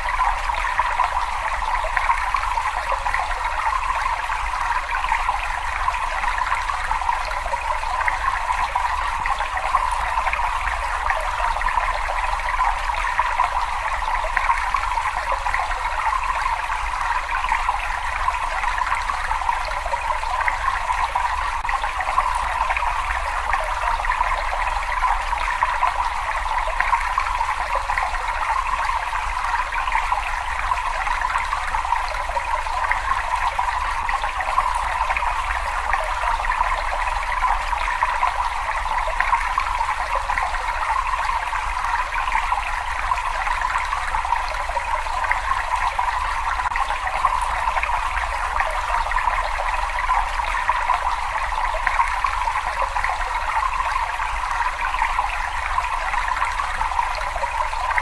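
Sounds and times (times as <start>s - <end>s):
water rushing in a cave: 0.0s - 58.0s.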